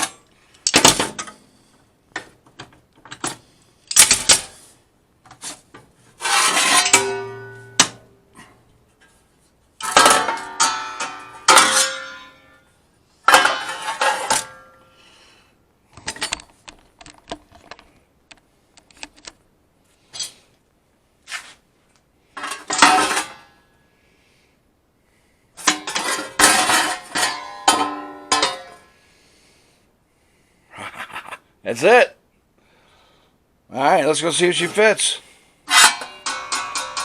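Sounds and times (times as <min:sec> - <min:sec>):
sheet metal clanking and ringing: 0:06.6 - 0:08.2, 0:09.8 - 0:12.6, 0:25.7 - 0:28.9, 0:35.7 - 0:37.0.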